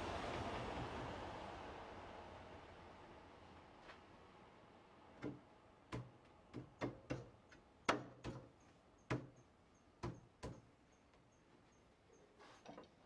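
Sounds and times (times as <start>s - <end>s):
sharp woodworking knocks: 5.2s - 8.5s, 9.1s - 9.4s, 10.0s - 10.6s.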